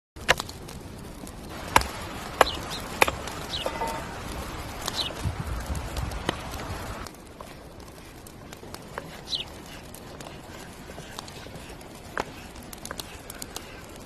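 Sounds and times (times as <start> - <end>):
background hiss: 0.7 - 7.1
birds chirping: 1.4 - 7.0, 8.7 - 14.0.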